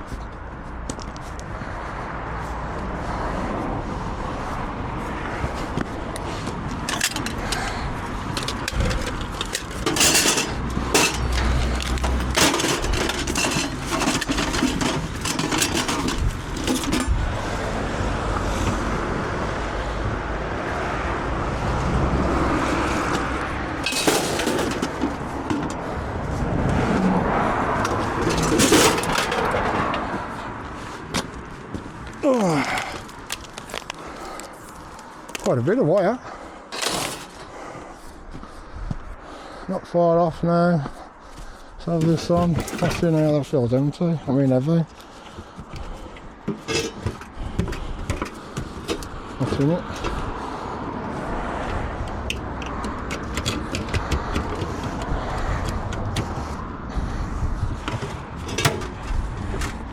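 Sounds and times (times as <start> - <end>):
scrap metal clattering: 6.8 - 17.8, 22.6 - 26.0, 27.8 - 31.4, 36.7 - 37.8, 42.0 - 43.4, 45.8 - 50.3, 57.8 - 59.9
steady low rumble: 55.0 - 59.9.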